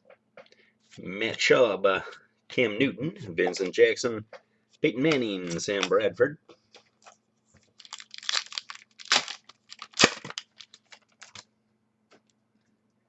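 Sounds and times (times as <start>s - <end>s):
cards rustling and clicking: 5.1s - 6.0s, 6.7s - 11.5s
foil wrapper tearing and crinkling: 7.7s - 11.4s.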